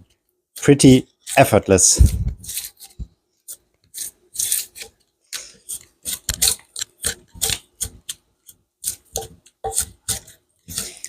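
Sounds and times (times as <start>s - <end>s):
drawknife scraping bark: 2.4s - 7.9s.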